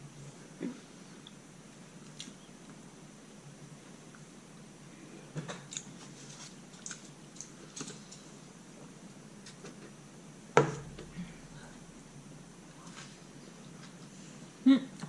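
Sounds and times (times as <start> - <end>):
crunching and chewing food: 2.0 - 2.8, 5.5 - 8.4.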